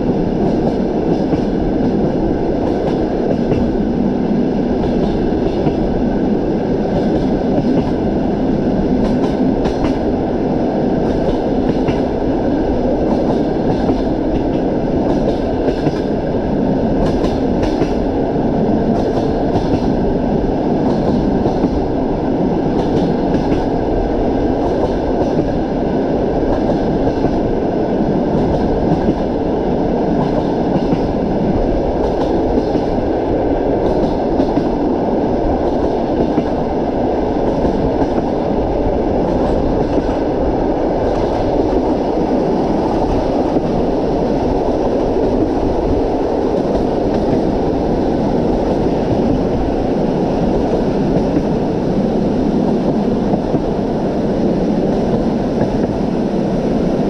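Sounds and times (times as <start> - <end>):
train wheels clacking: 0.0 - 3.8, 6.8 - 8.1, 8.9 - 10.1, 11.0 - 12.1, 13.0 - 16.2, 17.0 - 18.1, 18.9 - 20.0, 20.8 - 21.8, 22.7 - 23.8, 24.6 - 25.6, 28.3 - 29.4, 30.1 - 31.2, 32.0 - 33.1, 33.8 - 34.8, 37.4 - 38.5, 41.0 - 49.7
train rolling rumble: 0.0 - 57.0.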